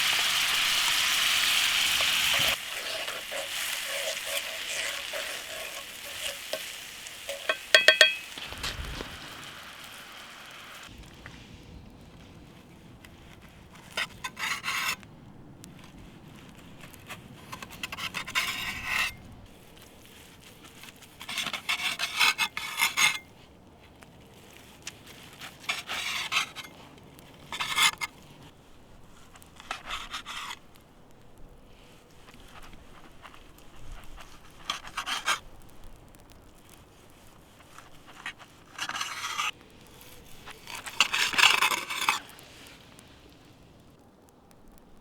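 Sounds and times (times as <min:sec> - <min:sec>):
knife sawing through steak: 0:01.2 - 0:07.8.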